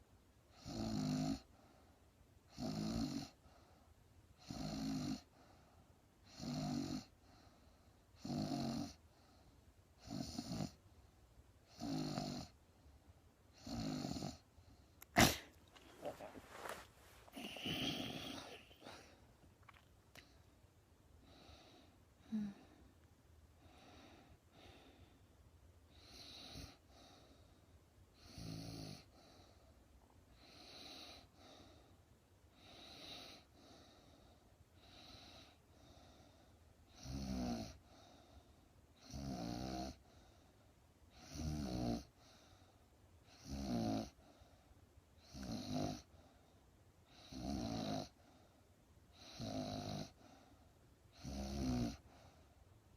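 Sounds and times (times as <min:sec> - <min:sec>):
woman snoring: 0:02.6 - 0:03.4, 0:04.5 - 0:05.3, 0:06.4 - 0:07.1, 0:08.2 - 0:09.0, 0:10.1 - 0:10.8, 0:11.7 - 0:12.5, 0:13.6 - 0:14.4, 0:15.1 - 0:19.2, 0:22.2 - 0:22.8, 0:28.2 - 0:29.1, 0:43.4 - 0:44.2, 0:45.3 - 0:46.1, 0:47.3 - 0:48.1, 0:49.3 - 0:50.2, 0:51.2 - 0:52.0.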